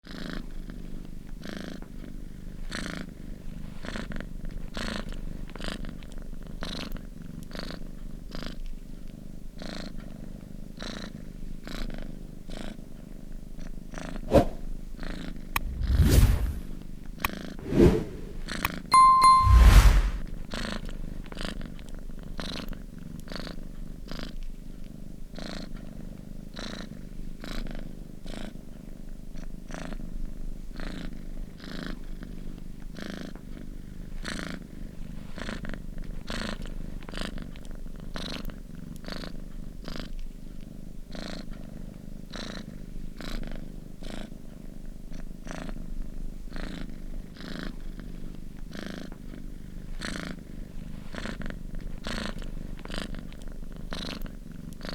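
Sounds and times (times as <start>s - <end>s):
cat purring: 29.7s - 54.9s.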